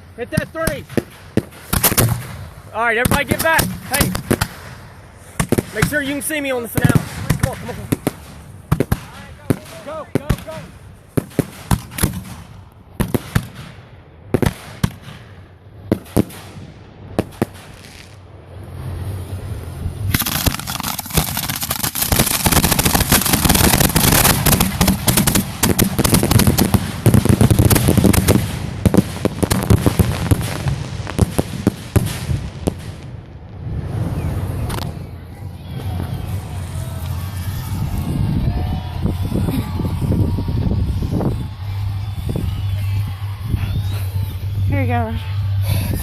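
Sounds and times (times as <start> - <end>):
fireworks bangs and crackling: 0.0 - 45.8.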